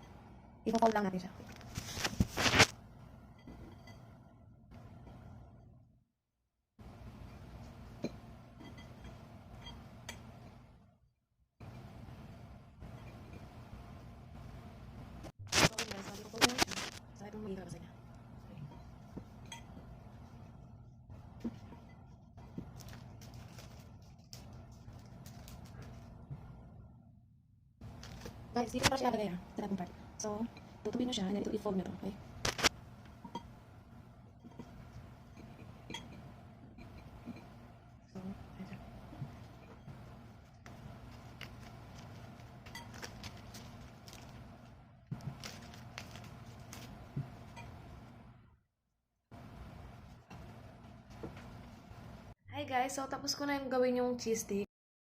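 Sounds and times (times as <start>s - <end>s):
faint low hum: 11.6s - 48.5s.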